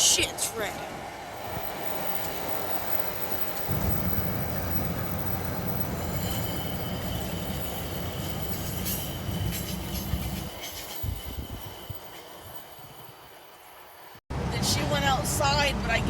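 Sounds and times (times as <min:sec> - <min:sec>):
train rumbling past: 0:00.0 - 0:16.0
high-pitched wheel squeal: 0:01.5 - 0:13.2.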